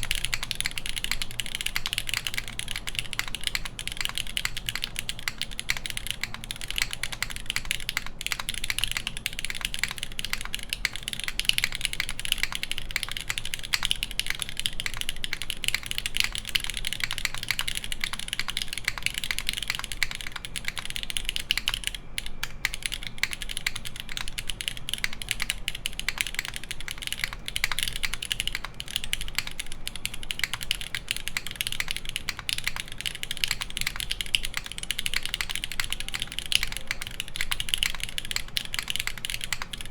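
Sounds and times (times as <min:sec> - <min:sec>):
mechanical keyboard typing: 0:00.0 - 0:39.9.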